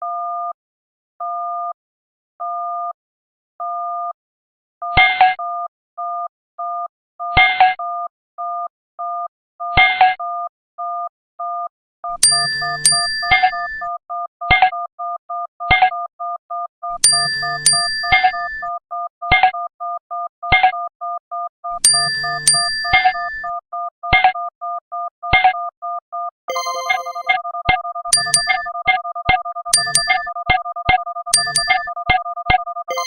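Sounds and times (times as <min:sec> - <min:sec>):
two-tone electronic beeps: 0:12.1 - 0:33.0
layered notification sound: 0:17.1 - 0:18.3, 0:21.9 - 0:23.3, 0:26.5 - 0:30.6, 0:31.3 - 0:32.2.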